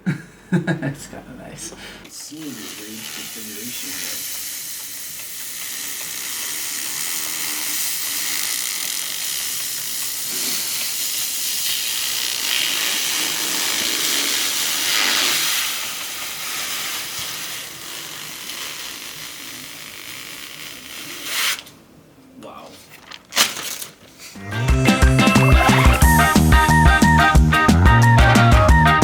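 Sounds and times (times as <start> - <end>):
computer cooling fans hissing: 1.4 - 21.3.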